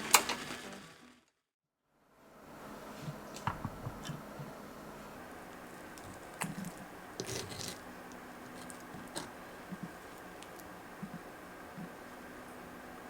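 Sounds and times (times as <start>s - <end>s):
wet squishes of stirring: 5.5s - 11.3s.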